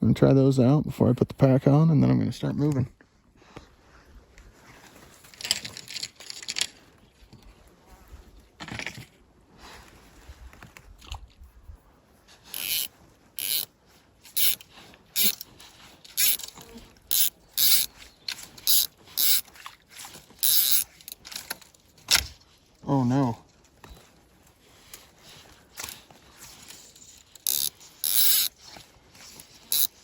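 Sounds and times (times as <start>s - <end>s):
fly reel ratcheting: 12.5s - 13.7s, 14.3s - 21.6s, 25.8s - 30.0s.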